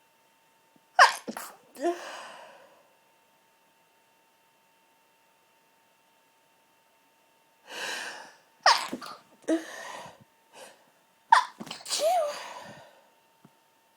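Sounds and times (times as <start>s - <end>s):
stifled sneezes: 1.0s - 2.1s, 8.6s - 9.8s, 11.3s - 12.8s
gasping inhale: 9.5s - 10.8s
short breaths: 9.5s - 10.9s.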